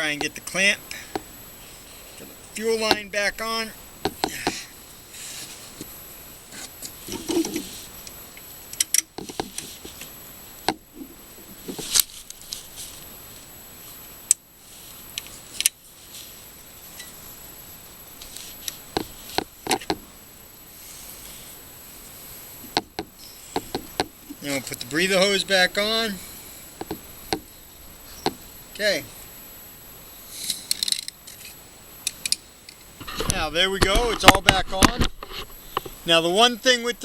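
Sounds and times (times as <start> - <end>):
metallic clicks of hand tools: 30.4 - 32.9.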